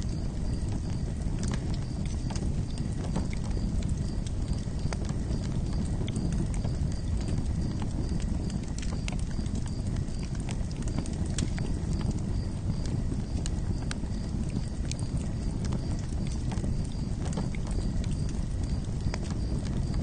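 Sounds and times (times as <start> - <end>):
campfire flames rumbling: 0.0 - 20.0
fire crackles and pops: 0.0 - 20.0.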